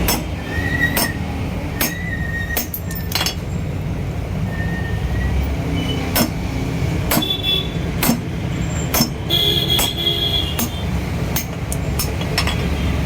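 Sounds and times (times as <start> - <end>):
metal tools clinking on engine parts: 1.8 - 3.5, 11.4 - 12.8.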